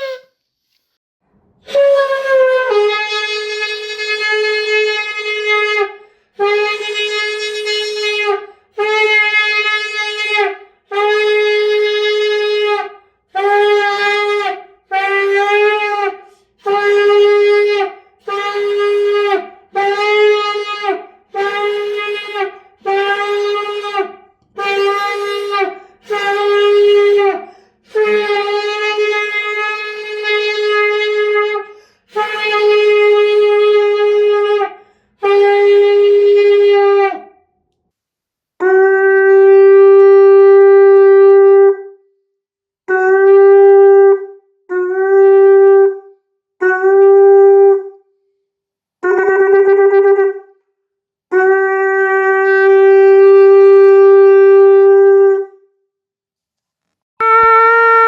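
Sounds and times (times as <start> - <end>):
ram's horn blasts: 57.2 - 58.0.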